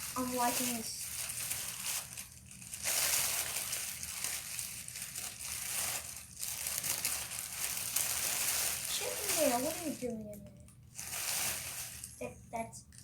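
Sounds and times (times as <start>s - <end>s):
packaging rustling and crinkling: 0.0s - 12.3s.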